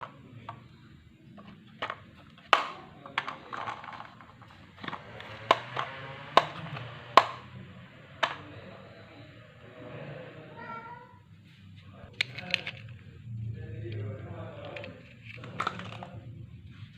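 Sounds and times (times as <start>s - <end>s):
marbles clacking on wooden track: 1.8s - 7.4s, 14.6s - 16.2s
marbles rolling rumble: 3.1s - 7.4s, 13.8s - 16.4s.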